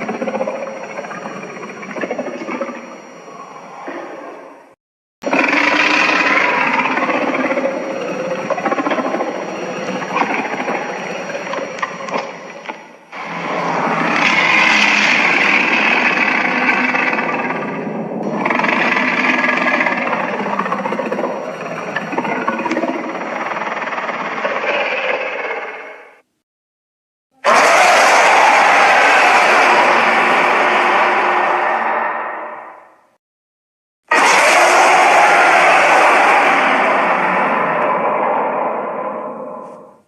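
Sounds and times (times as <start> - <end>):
monster growls: 13.1 - 24.6, 27.4 - 33.0, 34.1 - 40.0.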